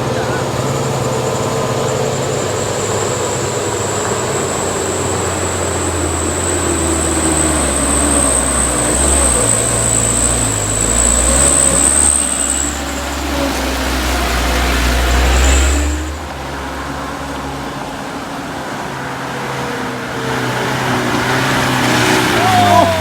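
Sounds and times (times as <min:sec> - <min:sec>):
thin high whine: 0:00.0 - 0:16.5
vehicle engine rumble: 0:00.0 - 0:23.0.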